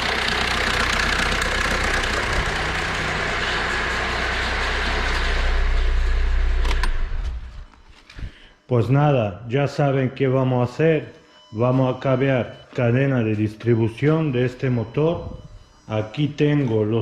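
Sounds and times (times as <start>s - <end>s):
diesel engine idling: 0.0s - 7.7s.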